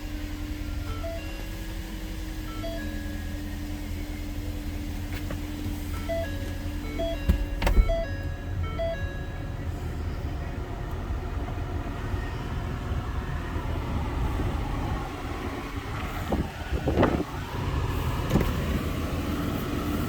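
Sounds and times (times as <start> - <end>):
electronic beeps: 6.0 - 10.6.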